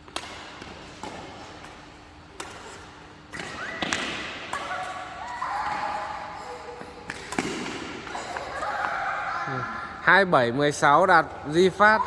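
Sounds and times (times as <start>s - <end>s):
racket hitting shuttlecock: 0.0s - 6.1s, 7.0s - 8.6s.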